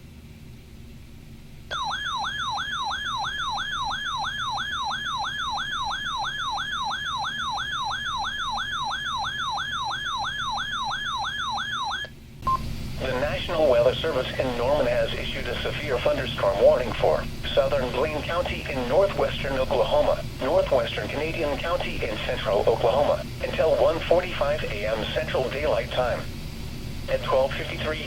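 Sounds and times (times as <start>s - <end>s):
warbling siren alarm tone: 1.7s - 12.1s
low static hiss: 12.1s - 28.0s.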